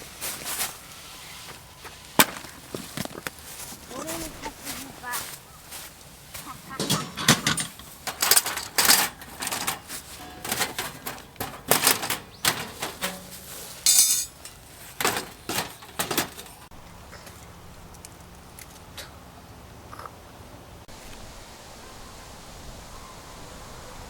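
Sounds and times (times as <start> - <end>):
hard objects clattering: 6.4 - 16.7.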